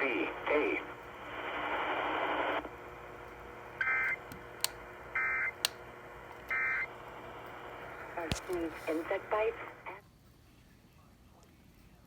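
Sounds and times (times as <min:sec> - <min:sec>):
radio hiss: 0:00.0 - 0:02.7, 0:06.5 - 0:10.0.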